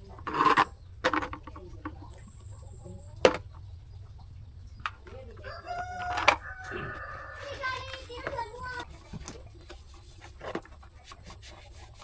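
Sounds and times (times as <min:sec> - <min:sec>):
sharp clicks and knocks: 0:00.0 - 0:02.4, 0:03.2 - 0:06.7
rooster crowing: 0:05.2 - 0:08.7.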